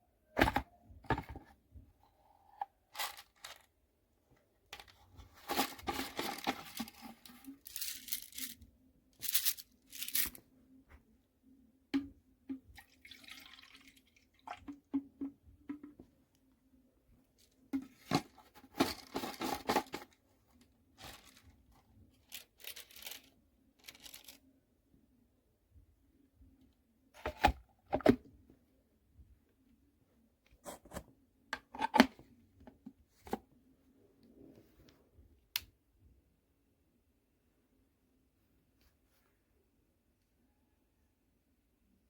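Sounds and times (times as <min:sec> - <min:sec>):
rustling and tearing: 0:05.4 - 0:08.6, 0:09.2 - 0:10.4, 0:21.0 - 0:21.6, 0:22.2 - 0:24.4.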